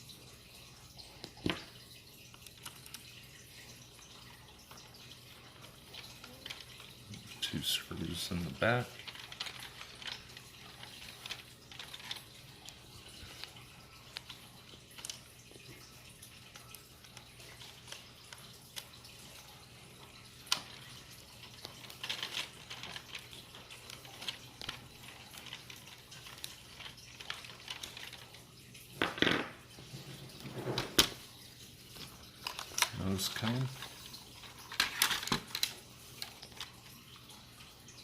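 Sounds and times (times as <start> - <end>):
plastic parts scraping: 5.4 - 15.2, 20.4 - 28.4, 29.0 - 31.2, 32.0 - 36.8
plastic toy parts clicking: 8.6 - 12.8, 21.5 - 28.3, 32.4 - 36.7.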